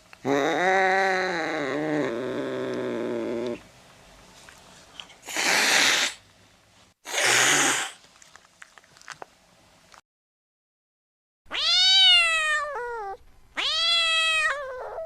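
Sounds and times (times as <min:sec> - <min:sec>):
short breathy hisses: 0:05.2 - 0:06.2, 0:07.1 - 0:08.0
cat meowing low: 0:11.5 - 0:15.0.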